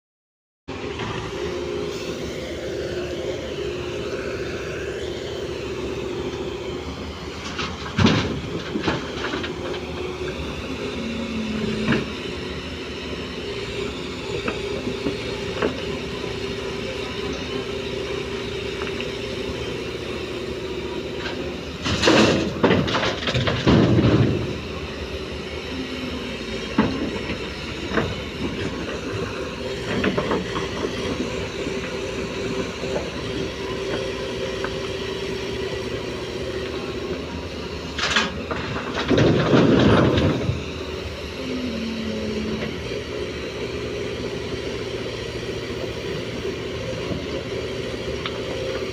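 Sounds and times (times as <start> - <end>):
excavator engine humming: 0.7 - 48.9
excavator bucket clanking: 21.2 - 24.7, 37.9 - 40.8.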